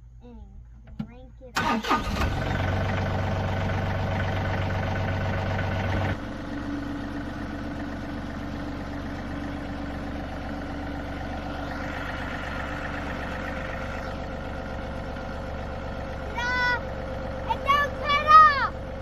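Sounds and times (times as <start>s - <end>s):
tractor diesel engine idling: 1.5s - 19.0s
higher-pitched engine layer: 11.0s - 15.1s.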